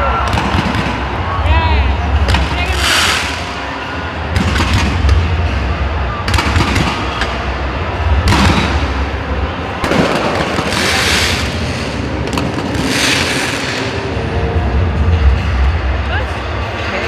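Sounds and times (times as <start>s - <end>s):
fireworks bangs: 0.2s - 1.3s, 2.2s - 5.6s, 6.2s - 7.4s, 8.1s - 14.4s
fireworks crackle: 2.3s - 5.3s, 9.8s - 14.3s
low rumble: 7.0s - 17.0s.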